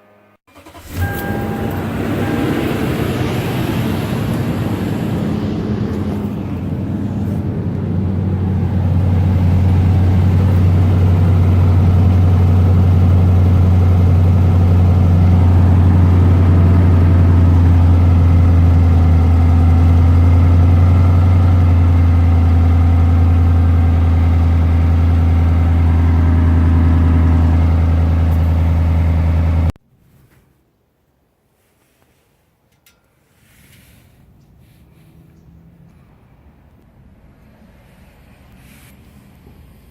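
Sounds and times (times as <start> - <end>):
car engine idling: 0.5 - 29.8.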